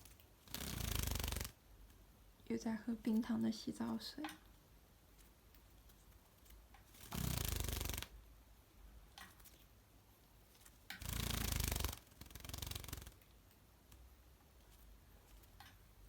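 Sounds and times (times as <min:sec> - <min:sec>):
wings fluttering in water: 0:00.1 - 0:01.6, 0:06.9 - 0:08.1, 0:11.0 - 0:13.2.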